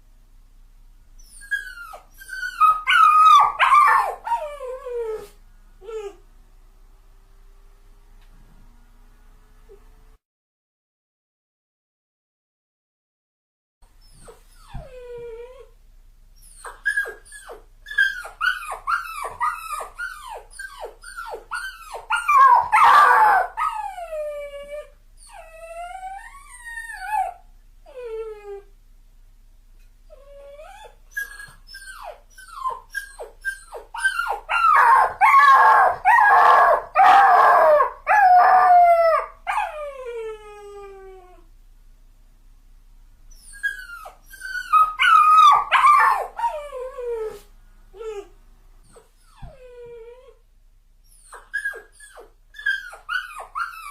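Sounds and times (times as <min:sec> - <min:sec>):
dog whining and whimpering: 0:01.2 - 0:06.2, 0:14.0 - 0:15.8, 0:16.4 - 0:28.7, 0:30.1 - 0:41.5, 0:43.3 - 0:50.4, 0:51.0 - 0:53.9.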